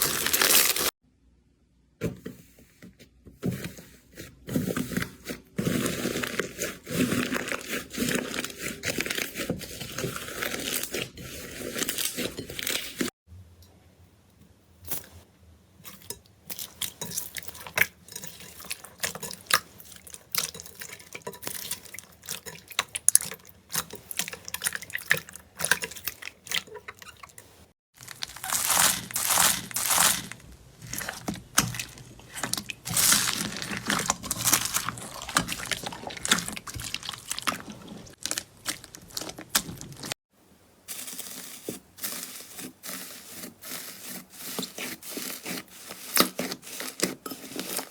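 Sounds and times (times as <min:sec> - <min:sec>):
slime crackling and popping: 0:28.0 - 0:40.1.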